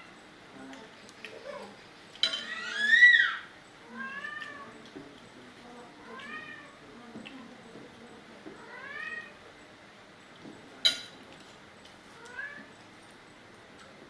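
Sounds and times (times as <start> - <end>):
cat meowing: 6.1 - 6.8, 8.6 - 9.4, 12.2 - 12.7.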